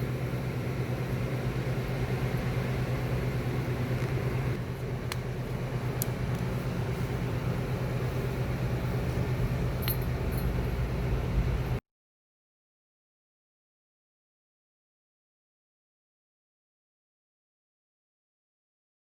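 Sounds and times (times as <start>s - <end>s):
electrical hum of welding equipment: 0.0s - 11.8s
fan running: 0.0s - 11.8s
light metallic clinks: 9.7s - 10.7s.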